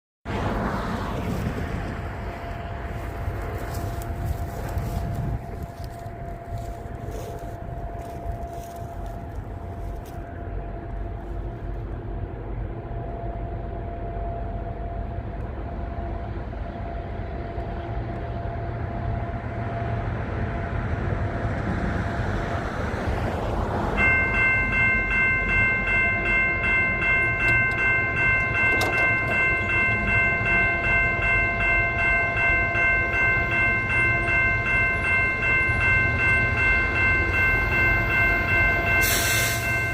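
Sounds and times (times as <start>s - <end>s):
freight train rumbling: 0.3s - 39.9s
locomotive air horn: 39.0s - 39.9s.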